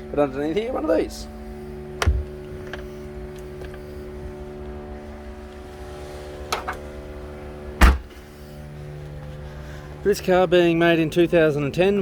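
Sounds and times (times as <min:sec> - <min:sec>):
steady low hum: 0:00.0 - 0:12.0
thump of cargo floor panel: 0:02.0 - 0:02.3, 0:07.8 - 0:08.2.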